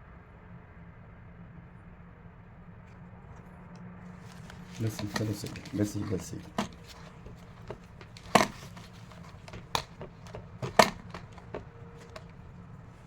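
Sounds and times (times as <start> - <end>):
equipment clicks and taps: 4.3 - 12.4.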